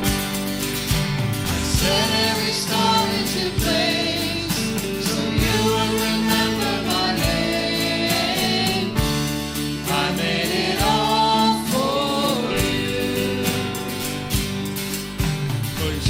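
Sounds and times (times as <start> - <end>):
guitar: 0.0 - 16.0
choir singing: 1.6 - 14.4.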